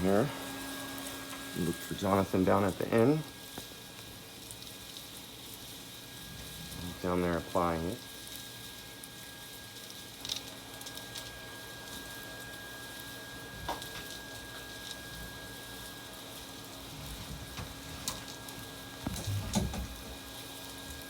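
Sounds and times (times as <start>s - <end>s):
insulation blowing through hose: 5.6s - 8.6s, 12.5s - 21.0s.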